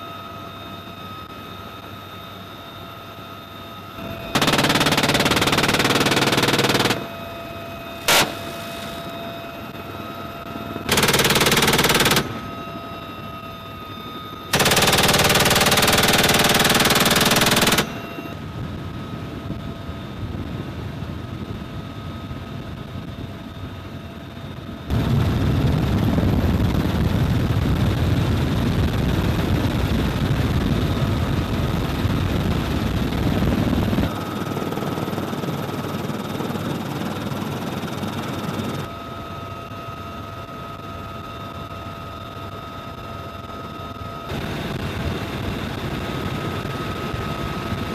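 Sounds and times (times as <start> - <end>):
helicopter turbine and rotor noise: 0.0 - 47.9
machine gun bursts: 4.3 - 7.1, 8.1 - 8.6, 10.9 - 12.4, 14.6 - 18.0.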